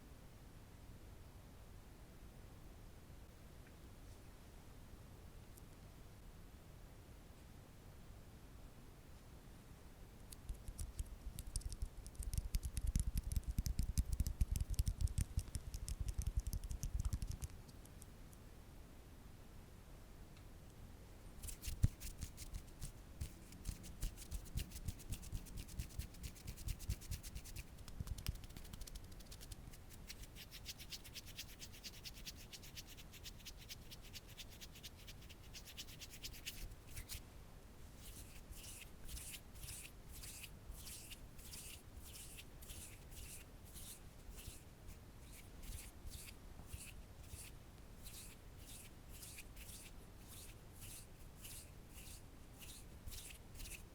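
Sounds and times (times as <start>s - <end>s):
hands rubbing an object: 10.4s - 18.0s, 21.4s - 37.2s, 37.9s - 53.9s.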